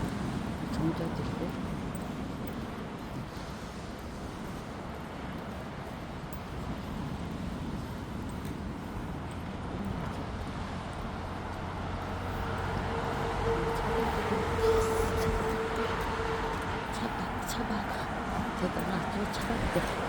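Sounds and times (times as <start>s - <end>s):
steady outdoor rushing noise: 0.0s - 20.0s
vehicle engine drone: 5.9s - 20.0s.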